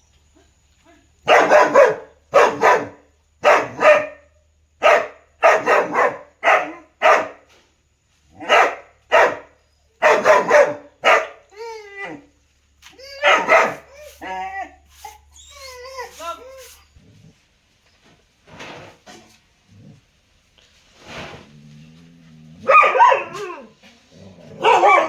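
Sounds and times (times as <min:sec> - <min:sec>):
dog barking loudly: 0:01.2 - 0:07.4, 0:08.4 - 0:11.4, 0:13.2 - 0:13.9, 0:22.6 - 0:23.6, 0:24.6 - 0:25.0
dog whining: 0:13.0 - 0:17.3.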